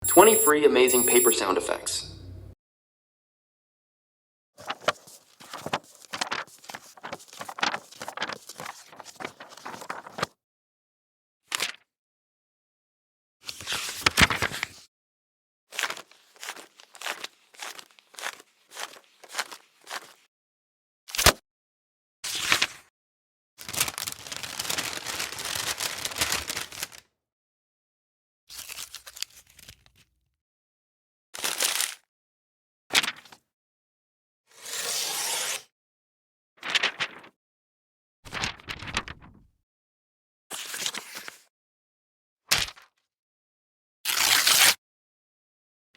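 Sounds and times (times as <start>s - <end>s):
paper crackling and crinkling: 4.6s - 10.3s, 14.0s - 14.7s, 15.8s - 20.2s, 23.6s - 27.0s, 36.6s - 37.3s, 38.3s - 39.4s.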